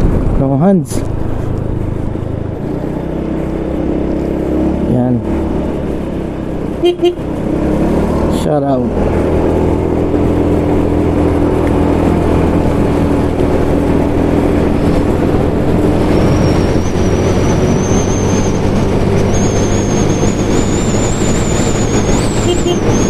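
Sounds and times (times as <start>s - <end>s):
motorcycle engine cruising: 0.0s - 23.0s
wind and road noise: 0.0s - 23.0s.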